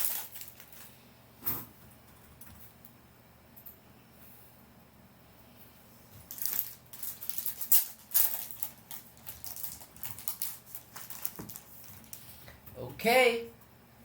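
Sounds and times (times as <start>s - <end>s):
plastic wrap crinkling: 0.0s - 0.9s, 6.2s - 12.3s.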